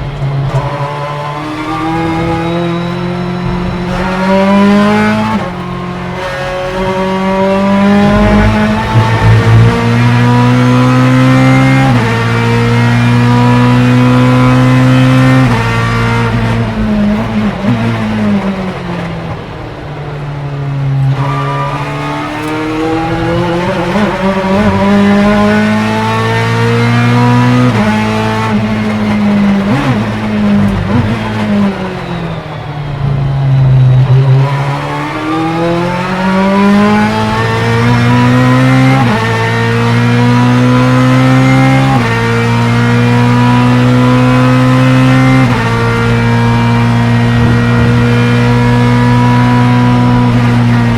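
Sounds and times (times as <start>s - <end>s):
racing car engine revving: 0.0s - 19.6s, 20.8s - 50.9s
engine blips on downshifts: 0.0s - 50.9s.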